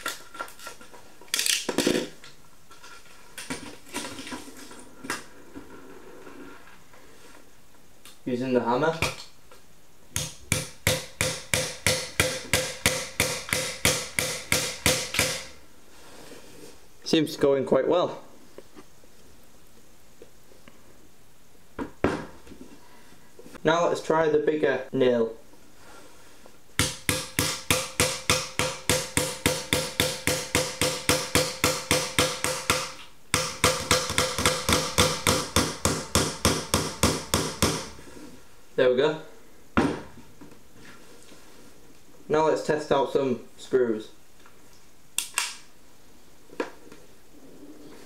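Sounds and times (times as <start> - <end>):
hammer hitting nail into wood: 10.2 - 15.5, 26.8 - 38.0.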